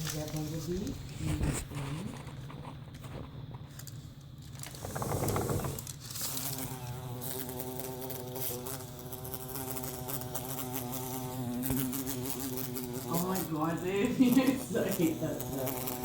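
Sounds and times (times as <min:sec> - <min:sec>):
bumblebee buzzing: 0:04.7 - 0:16.0.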